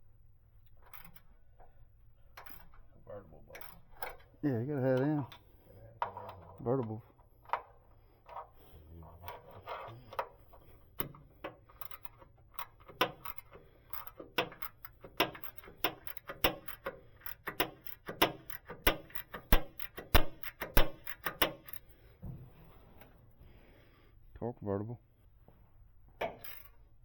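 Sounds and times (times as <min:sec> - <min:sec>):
bolts and hand tools clinking: 0:02.3 - 0:21.9.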